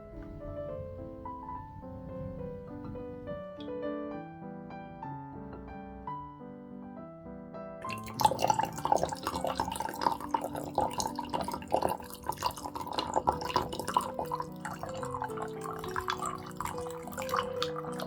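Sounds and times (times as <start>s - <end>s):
liquid pouring and splashing: 7.8s - 18.0s
soft background music: 7.8s - 18.0s.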